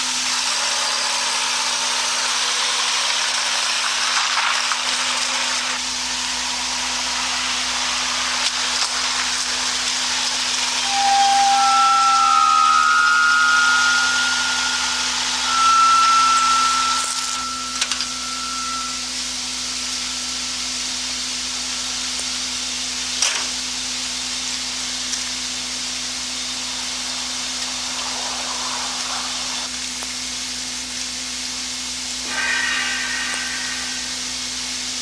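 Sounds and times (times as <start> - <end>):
steady hiss: 0.0 - 35.0
low hum: 6.1 - 22.2, 32.2 - 35.0
high whistling tones: 6.3 - 22.0, 25.8 - 29.7, 32.2 - 35.0.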